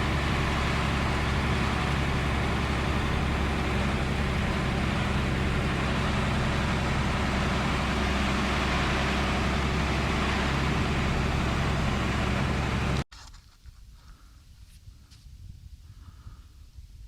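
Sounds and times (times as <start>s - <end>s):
truck engine running: 0.0s - 13.1s.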